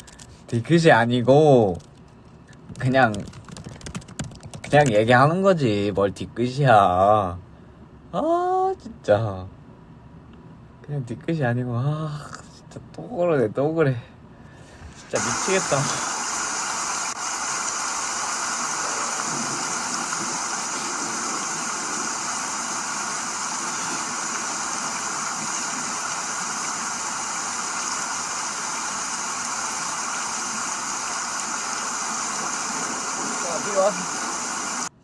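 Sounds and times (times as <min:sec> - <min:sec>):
steady hiss: 0:14.6 - 0:35.0.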